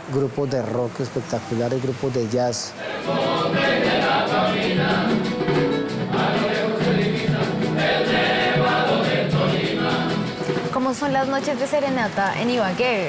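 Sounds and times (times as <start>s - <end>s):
voices singing in harmony: 2.7s - 10.7s.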